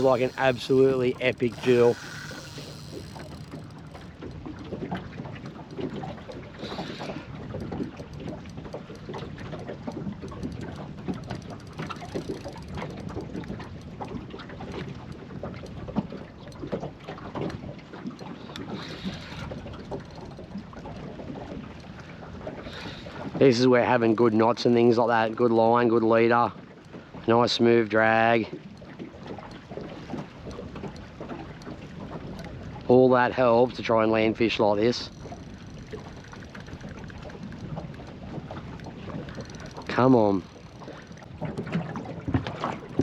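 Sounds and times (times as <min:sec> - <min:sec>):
wind on microphone: 0:00.0 - 0:08.5
waves slapping boat hull: 0:00.0 - 0:43.0.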